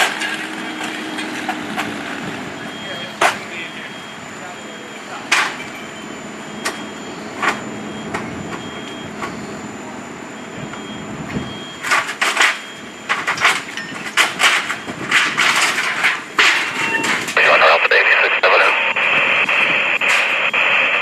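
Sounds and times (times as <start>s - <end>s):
debris clattering: 11.9s - 17.4s
steady background hum: 17.3s - 21.0s.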